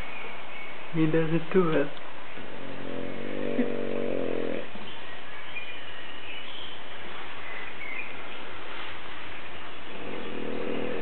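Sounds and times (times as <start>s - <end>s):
low hum: 2.0s - 4.8s, 9.8s - 11.0s.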